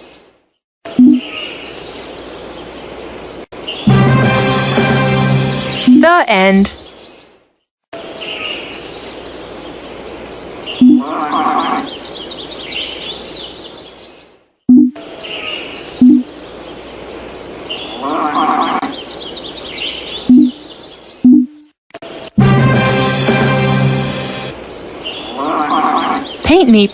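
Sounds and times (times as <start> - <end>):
birds chirping and twittering: 0.0 - 4.0, 6.0 - 7.4, 8.0 - 22.4, 24.6 - 26.9.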